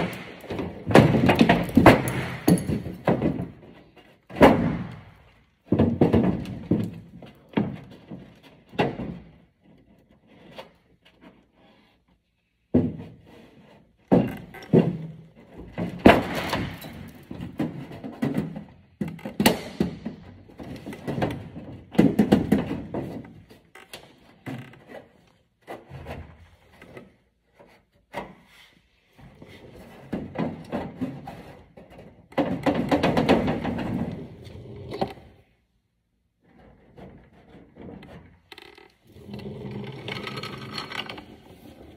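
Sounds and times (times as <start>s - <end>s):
thunks and knocks on sheet metal: 0.0s - 3.7s, 4.3s - 7.9s, 14.1s - 18.7s, 32.3s - 34.3s.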